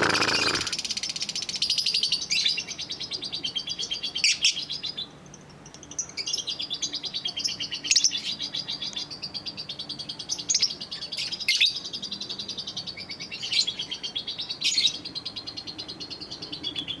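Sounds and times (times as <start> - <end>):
lovebird chattering: 0.0 - 0.8
sharp bird calls: 0.0 - 1.2.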